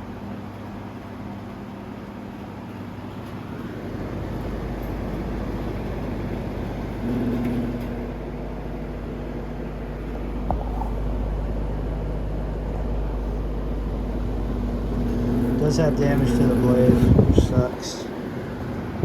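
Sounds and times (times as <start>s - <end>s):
box fan running: 0.0s - 19.0s.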